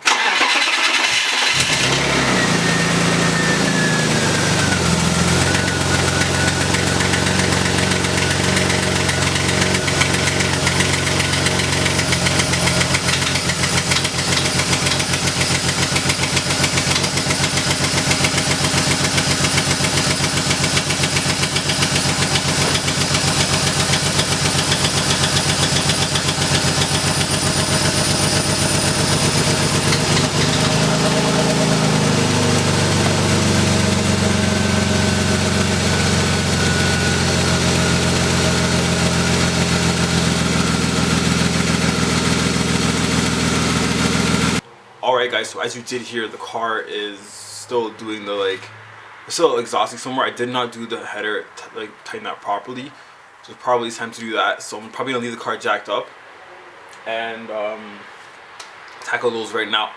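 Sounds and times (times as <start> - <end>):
car engine starting and idling: 0.0 - 44.6.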